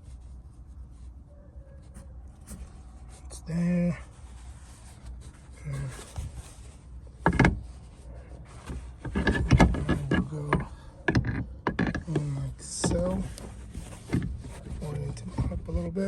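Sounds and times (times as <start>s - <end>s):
plastic hardware knocking and rattling: 8.7s - 15.8s.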